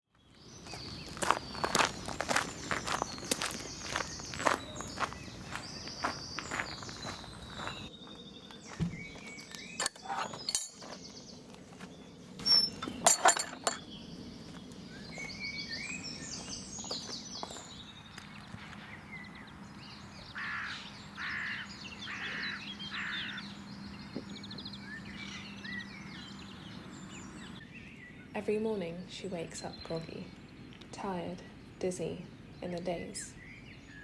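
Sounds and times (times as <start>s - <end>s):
small birds chirping and singing: 0.1s - 34.0s
footsteps: 0.6s - 9.6s, 14.4s - 18.9s.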